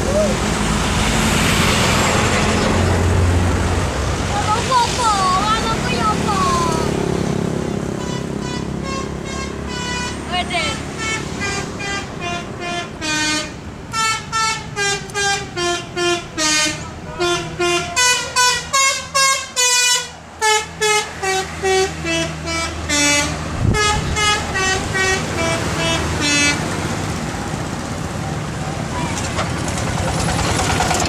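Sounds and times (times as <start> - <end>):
bus engine running: 0.0 - 31.0
multi-tone musical air horn: 8.0 - 26.7.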